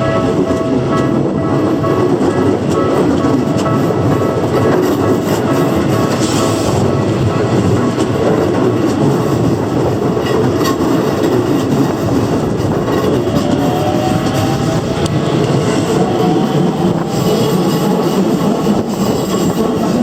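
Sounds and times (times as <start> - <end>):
train wheels rumbling on rails: 0.0 - 20.0
wheels clicking over rail joints: 0.0 - 20.0.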